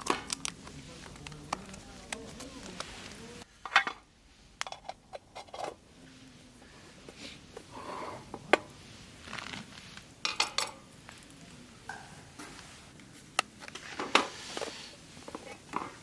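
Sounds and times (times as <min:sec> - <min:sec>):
small hard objects clicking: 0:00.0 - 0:03.2.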